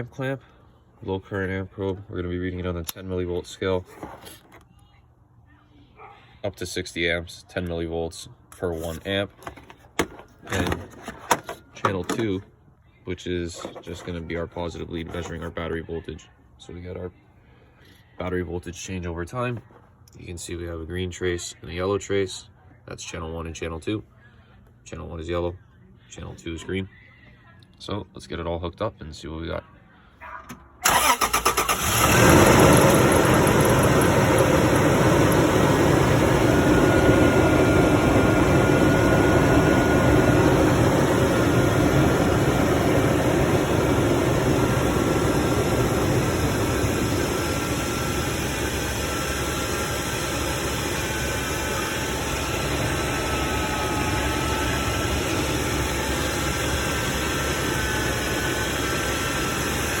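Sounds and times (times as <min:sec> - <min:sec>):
engine starting and idling: 0:30.8 - 1:00.0
faint high whine: 0:33.1 - 0:59.8.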